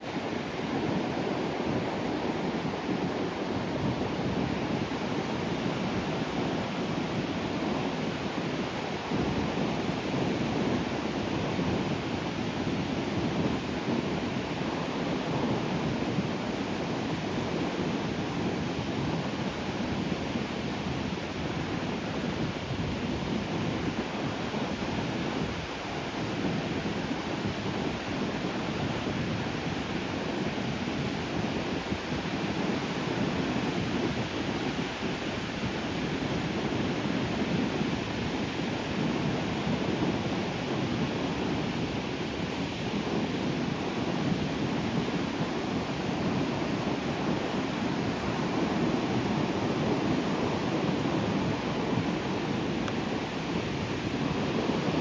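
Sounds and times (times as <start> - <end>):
sea waves breaking on shore: 27.4 - 55.0.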